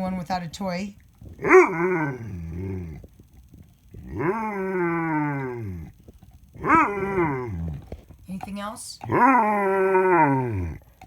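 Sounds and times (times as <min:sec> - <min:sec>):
dog grumbling howls: 0:01.3 - 0:03.1, 0:03.9 - 0:06.0, 0:06.6 - 0:08.0, 0:09.0 - 0:10.8.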